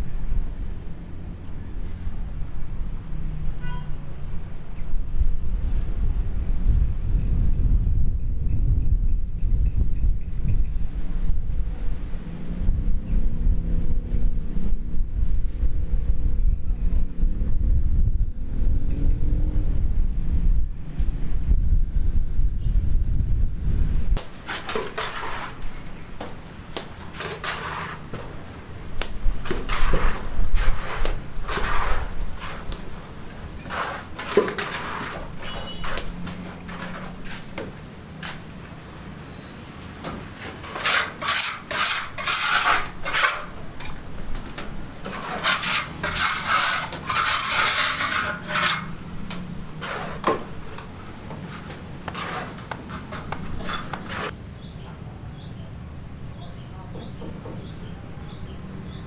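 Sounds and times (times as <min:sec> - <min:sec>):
rough scraping strokes: 0:24.2 - 0:38.8, 0:40.1 - 0:54.4.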